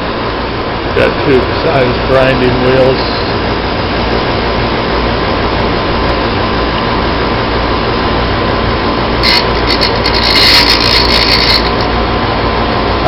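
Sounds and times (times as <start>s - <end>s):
bench grinder running: 9.2s - 11.9s
drill bit grinding on wheel: 9.2s - 11.9s.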